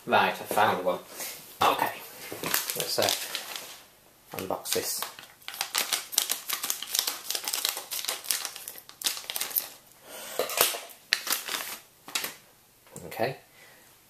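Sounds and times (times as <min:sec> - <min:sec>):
packaging crinkling and rustling: 0:02.3 - 0:12.4.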